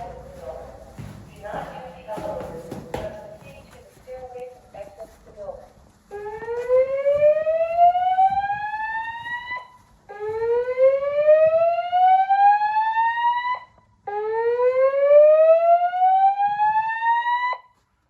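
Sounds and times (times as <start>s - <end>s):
whooping fire alarm tone: 6.1s - 17.8s.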